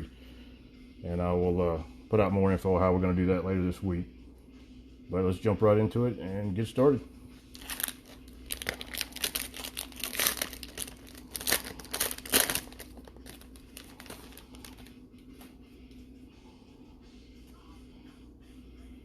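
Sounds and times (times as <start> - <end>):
plastic wrapping crinkling and tearing: 7.5 - 14.9.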